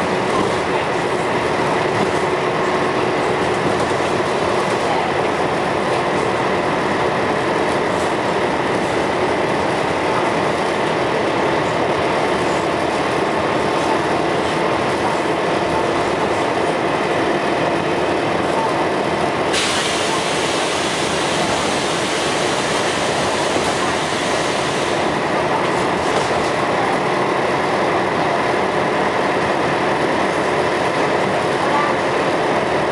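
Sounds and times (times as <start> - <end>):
bus engine rumbling: 0.0 - 32.9
loud air hiss: 19.5 - 25.0.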